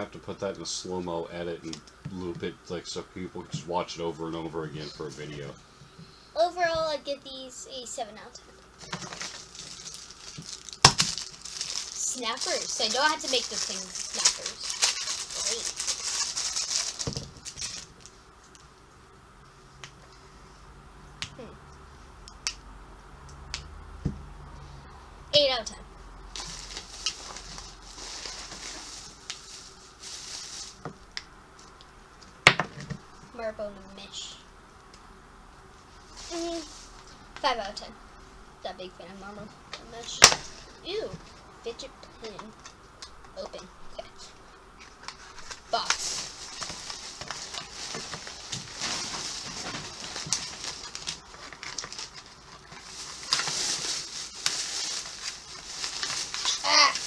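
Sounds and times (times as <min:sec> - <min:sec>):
plastic packaging crinkling: 0:08.7 - 0:18.6, 0:26.3 - 0:31.0, 0:36.0 - 0:37.1, 0:44.8 - 0:57.0.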